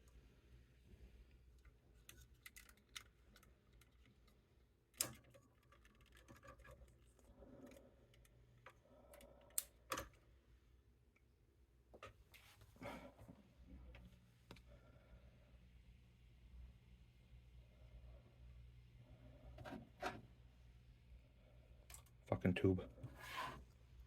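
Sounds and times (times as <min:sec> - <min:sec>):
plastic parts clicking: 0:02.0 - 0:07.0.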